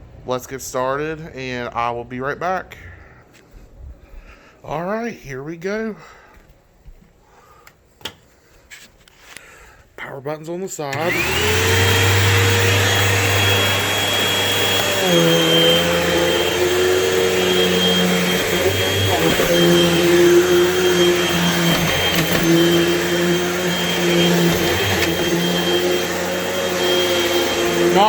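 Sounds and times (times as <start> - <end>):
upright vacuum cleaner whining: 10.9 - 28.0.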